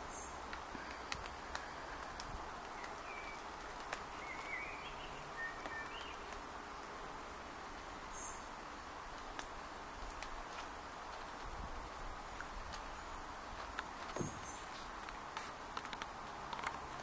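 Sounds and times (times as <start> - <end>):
outdoor background hiss: 0.0 - 17.0
sharp clicks: 13.6 - 17.0.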